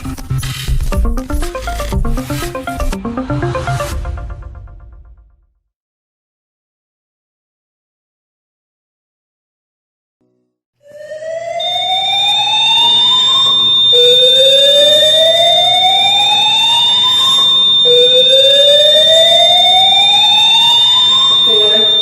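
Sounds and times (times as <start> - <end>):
steady high-pitched tone: 0.5 - 5.0, 10.9 - 22.0
whooping fire alarm: 10.8 - 22.0.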